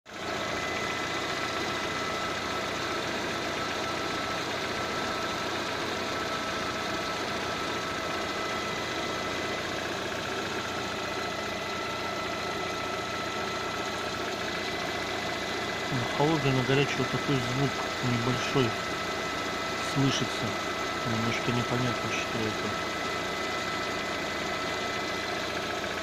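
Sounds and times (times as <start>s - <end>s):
car engine idling: 0.1s - 26.0s
light engine knocking: 20.5s - 26.0s.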